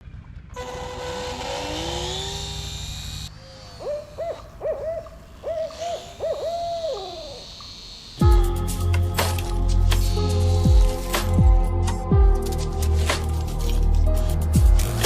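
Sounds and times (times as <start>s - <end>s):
rising whine: 0.6s - 8.9s
steady hum: 0.6s - 11.0s
owl hooting: 3.3s - 8.2s.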